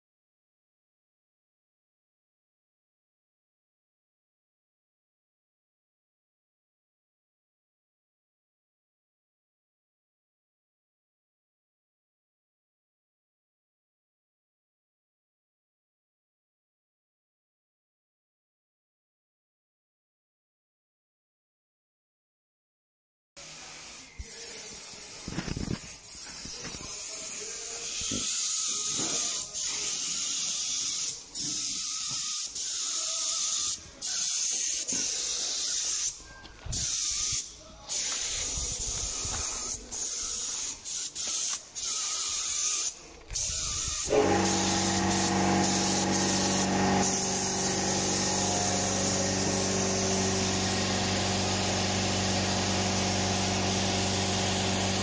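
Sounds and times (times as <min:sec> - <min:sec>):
spraying hiss: 0:23.4 - 0:55.0
machine hum with pitched drone: 0:44.1 - 0:55.0.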